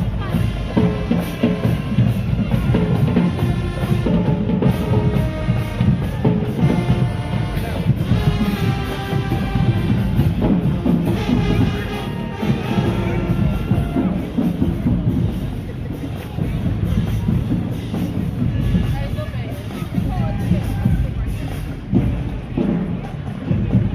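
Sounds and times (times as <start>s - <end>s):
drumline with heavy bass drum: 0.0s - 23.9s
marching band playing: 0.0s - 23.9s
brass holding long notes: 0.1s - 14.0s.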